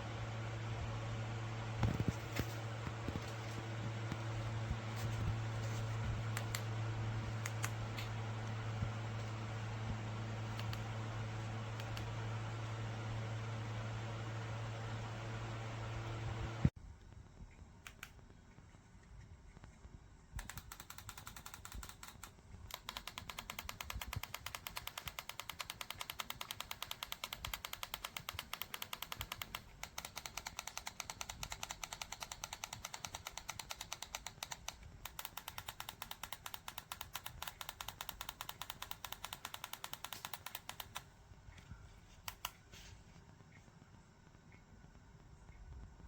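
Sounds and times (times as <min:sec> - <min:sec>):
rapid even clicking: 0:05.0 - 0:09.3, 0:10.4 - 0:12.2, 0:19.6 - 0:42.8.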